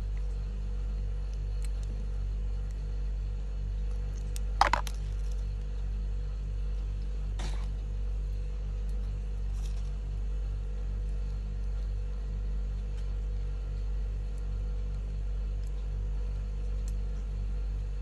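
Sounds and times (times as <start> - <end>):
low pulsing mechanical hum: 0.0 - 18.0.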